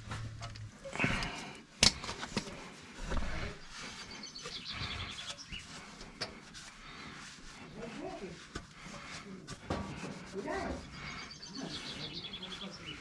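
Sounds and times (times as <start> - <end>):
faint bird chirping: 3.5 - 6.0, 10.8 - 13.0.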